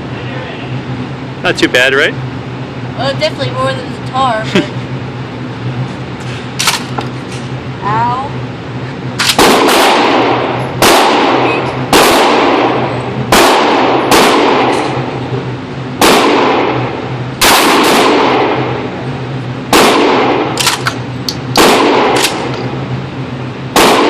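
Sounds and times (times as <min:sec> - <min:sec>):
steady low hum: 0:00.0 - 0:24.0
shotgun shots with echo: 0:09.2 - 0:15.1, 0:16.0 - 0:18.8, 0:19.7 - 0:22.6, 0:23.7 - 0:24.0
sharp clicks: 0:20.6 - 0:21.5.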